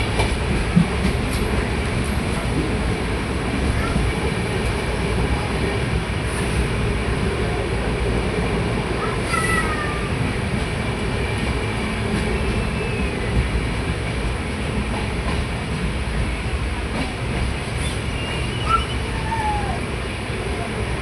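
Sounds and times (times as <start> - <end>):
train rumbling on track: 0.0 - 21.0
wheel squeals on rails: 17.8 - 19.4.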